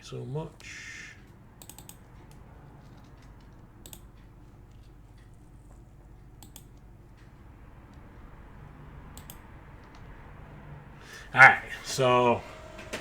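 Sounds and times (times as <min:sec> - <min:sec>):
faint low hum: 0:00.0 - 0:13.0
keyboard clicks: 0:00.6 - 0:08.0, 0:09.1 - 0:10.0.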